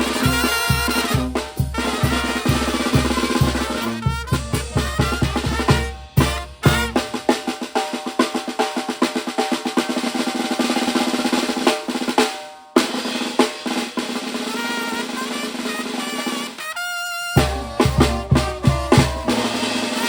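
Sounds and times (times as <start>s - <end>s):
loud drum hit: 0.0s - 7.7s, 17.4s - 20.0s
brass band melody: 0.0s - 20.0s
snare drum roll: 0.0s - 20.0s.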